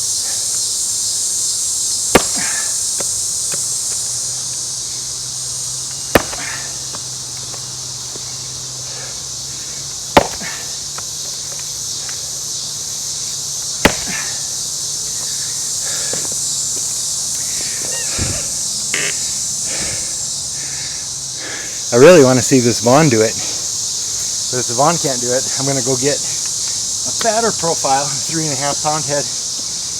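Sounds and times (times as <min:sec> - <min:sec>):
insects chirring: 0:00.0 - 0:29.9
axe striking wood: 0:02.1 - 0:02.6, 0:06.1 - 0:06.6, 0:10.1 - 0:10.6, 0:13.8 - 0:14.2.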